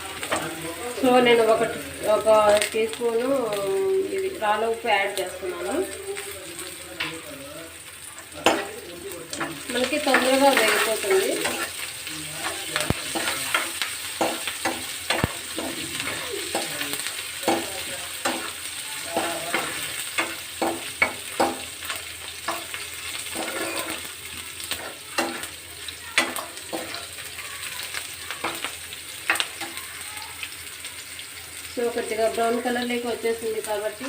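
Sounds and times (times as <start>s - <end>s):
onions sizzling in hot oil: 0.0s - 34.0s
spoon scraping and knocking pan: 8.4s - 27.1s.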